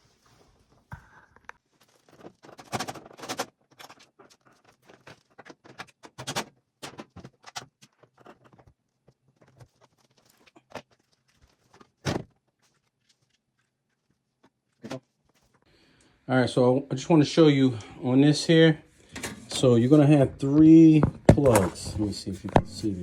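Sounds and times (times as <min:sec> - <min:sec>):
hand tools clicking and knocking: 0:21.0 - 0:22.9.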